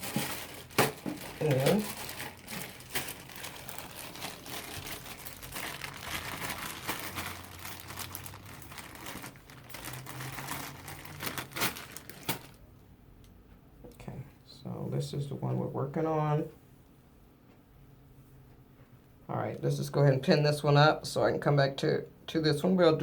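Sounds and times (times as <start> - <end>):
hair crackling and rustling: 0.0 - 12.6.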